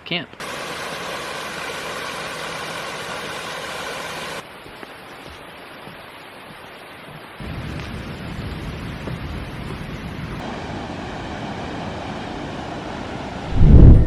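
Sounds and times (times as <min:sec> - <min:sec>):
rushing water: 0:00.3 - 0:14.0
heavy low rumble: 0:13.5 - 0:14.0.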